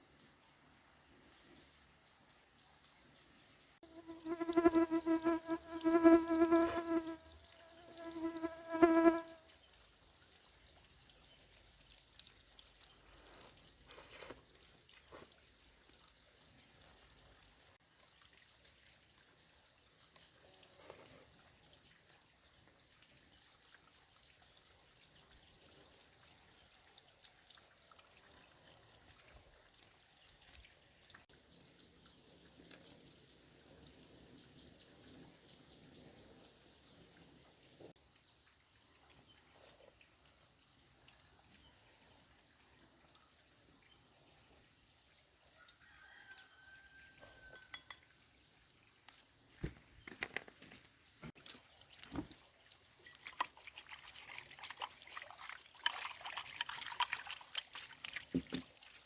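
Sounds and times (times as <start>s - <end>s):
insect buzzing: 3.8s - 9.5s.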